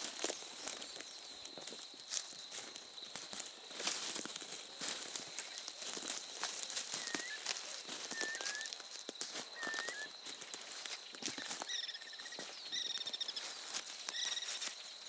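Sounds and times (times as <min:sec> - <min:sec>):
birds singing: 0:06.6 - 0:15.0.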